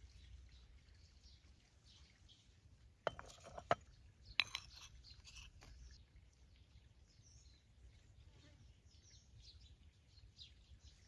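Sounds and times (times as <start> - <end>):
small cookware clinking: 3.0 - 5.7.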